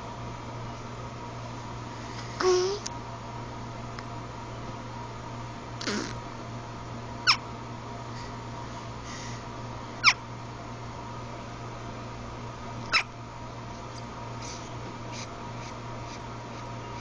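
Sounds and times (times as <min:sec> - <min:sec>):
hiccups: 0:05.8 - 0:06.2.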